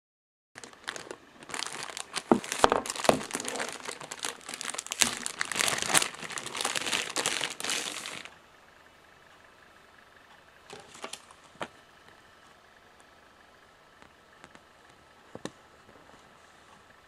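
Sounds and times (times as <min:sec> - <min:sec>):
packaging crinkling: 0:00.6 - 0:08.4, 0:10.7 - 0:11.5.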